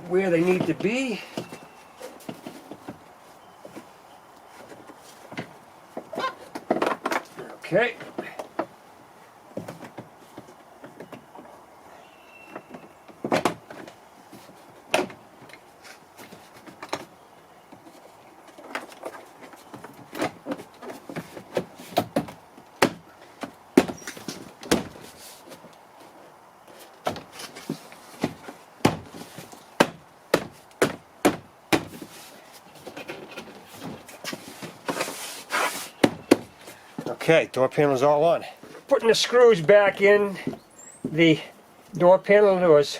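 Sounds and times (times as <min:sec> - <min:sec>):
door panel knocks and thumps: 0:20.1 - 0:25.0, 0:29.8 - 0:32.0.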